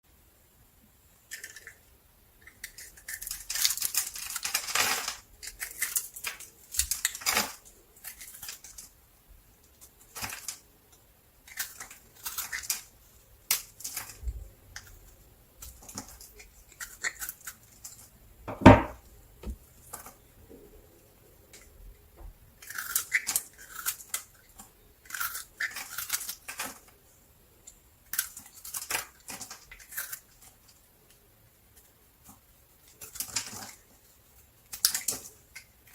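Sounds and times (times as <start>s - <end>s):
loud knock: 18.5s - 19.6s.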